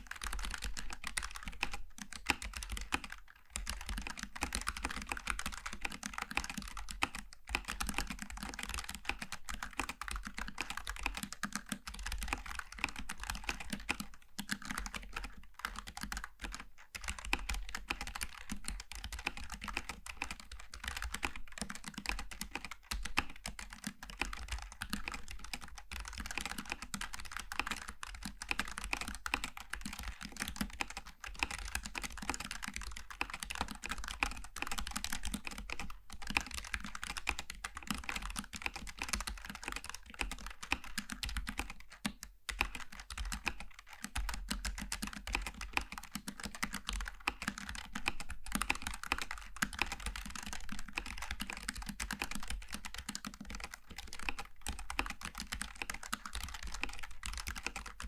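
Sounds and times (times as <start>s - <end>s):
mechanical keyboard typing: 0.0s - 58.0s.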